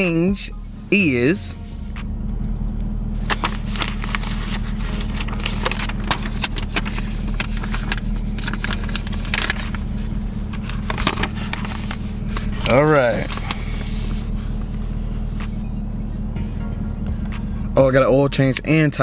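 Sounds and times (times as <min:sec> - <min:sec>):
car engine idling: 0:00.0 - 0:19.0
paper receipt crackling: 0:03.0 - 0:16.2.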